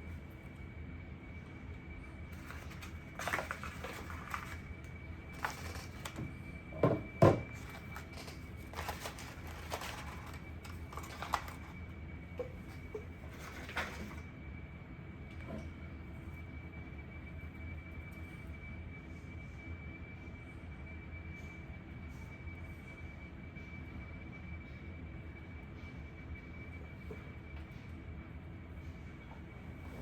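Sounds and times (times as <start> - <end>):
packaging rustling and scraping: 2.3 - 6.4, 7.3 - 14.3.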